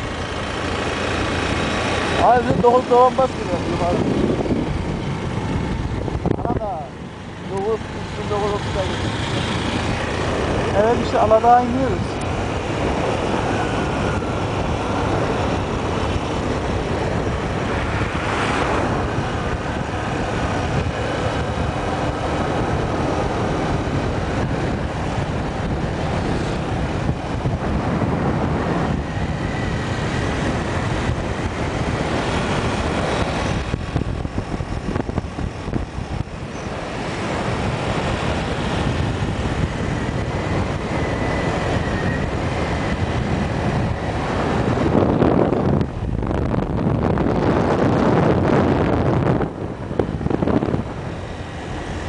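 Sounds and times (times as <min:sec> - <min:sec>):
motorcycle engine running: 0:00.0 - 0:40.7
wind buffeting microphone: 0:00.0 - 0:52.0.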